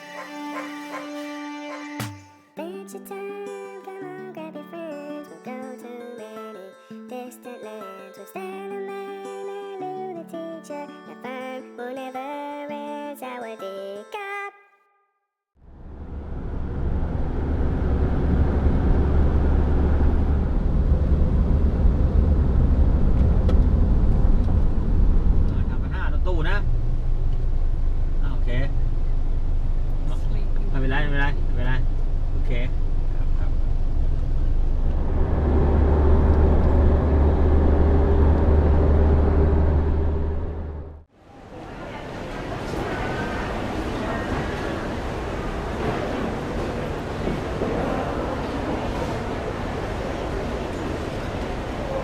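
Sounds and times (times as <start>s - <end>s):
moving vehicle rumble: 15.6s - 41.1s.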